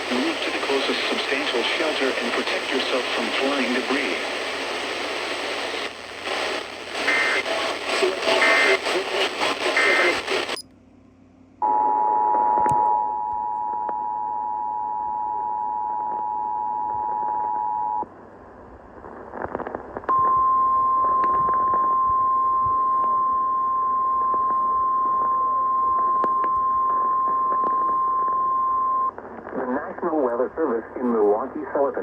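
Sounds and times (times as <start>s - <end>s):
faint radio hiss: 0.0s - 10.6s, 17.4s - 32.0s.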